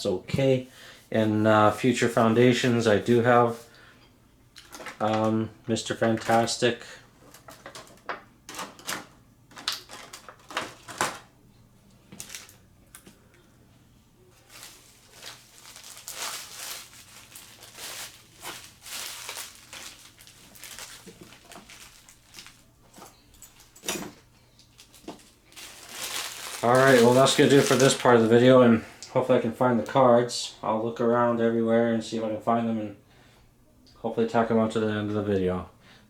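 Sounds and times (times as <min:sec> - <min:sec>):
packaging rustling and crinkling: 0:04.6 - 0:11.3, 0:12.1 - 0:13.1, 0:14.3 - 0:28.5.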